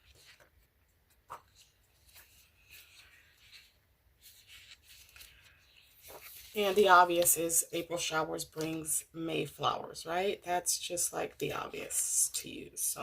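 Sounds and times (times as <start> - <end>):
paper pages rustling and turning: 0.0 - 9.0.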